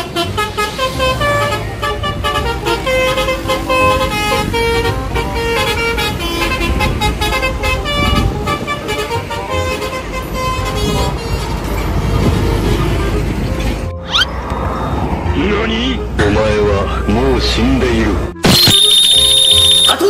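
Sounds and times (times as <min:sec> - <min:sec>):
multi-tone bus horn tune: 0:00.0 - 0:14.0, 0:18.7 - 0:20.0
bus engine running: 0:00.0 - 0:18.4.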